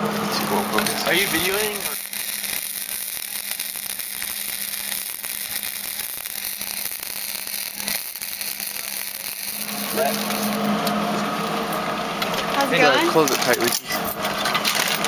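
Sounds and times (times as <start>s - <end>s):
welding arc crackling: 0.0s - 15.0s
low hum: 7.7s - 14.7s.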